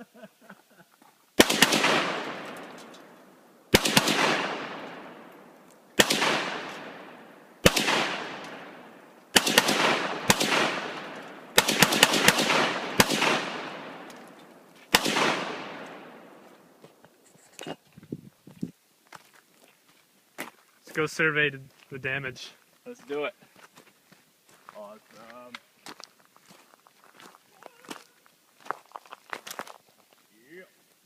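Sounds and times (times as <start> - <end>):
rifle shots with echo: 1.4 - 16.8.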